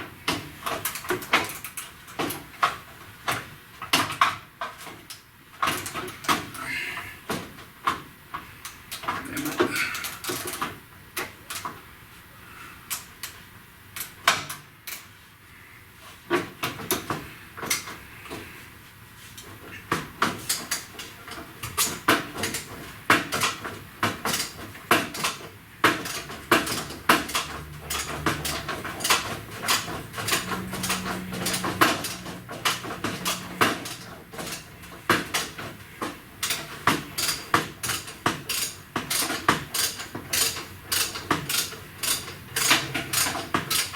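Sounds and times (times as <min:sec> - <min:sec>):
wrench clicking on bolts: 0:25.2 - 0:35.6, 0:36.4 - 0:43.9.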